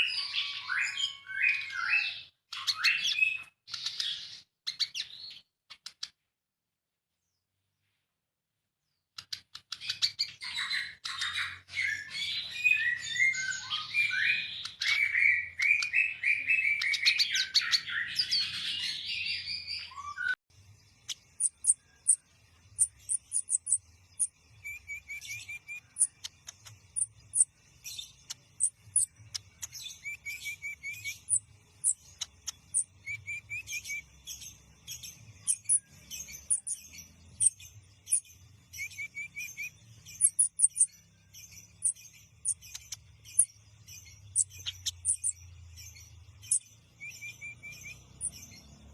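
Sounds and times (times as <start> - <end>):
birds singing rapid song: 0.0 - 6.3, 7.1 - 48.9.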